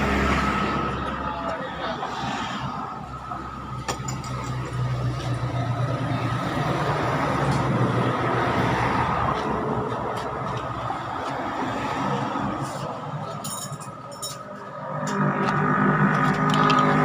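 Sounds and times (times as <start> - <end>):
vehicle engine humming: 0.0 - 17.0.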